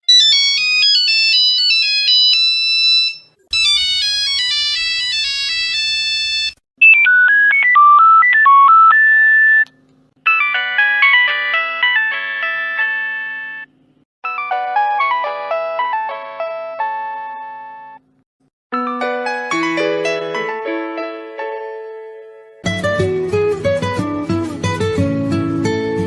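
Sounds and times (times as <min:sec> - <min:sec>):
mobile phone ringtones: 0:00.1 - 0:09.7, 0:10.3 - 0:13.7.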